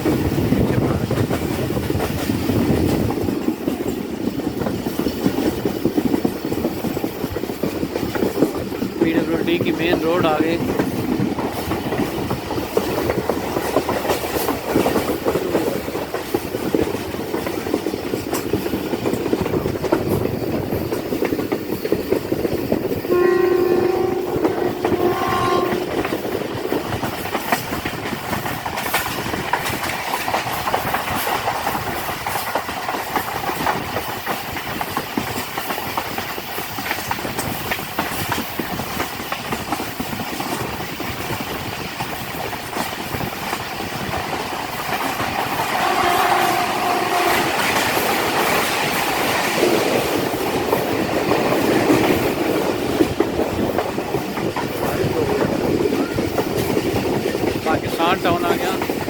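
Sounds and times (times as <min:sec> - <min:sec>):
train rumbling on track: 0:00.0 - 0:59.0
train horn: 0:23.1 - 0:26.2, 0:45.7 - 0:47.8.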